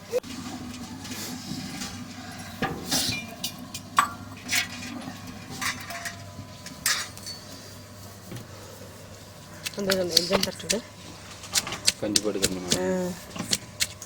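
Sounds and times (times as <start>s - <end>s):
kitchen vessels clinking: 0.2s - 7.6s.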